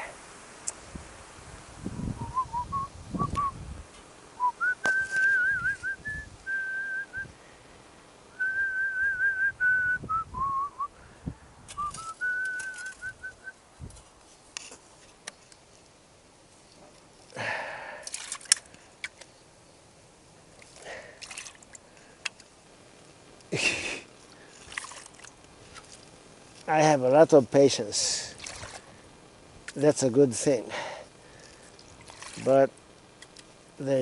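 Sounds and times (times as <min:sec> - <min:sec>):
person whistling a tune: 0:02.2 - 0:03.6, 0:04.4 - 0:07.3, 0:08.4 - 0:10.9, 0:11.8 - 0:13.5.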